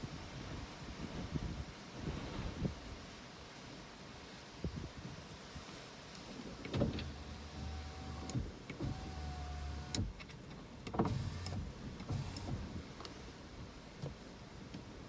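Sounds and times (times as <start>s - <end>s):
thumps and clicks: 6.7s - 13.2s
small electric motor whining: 7.1s - 10.0s.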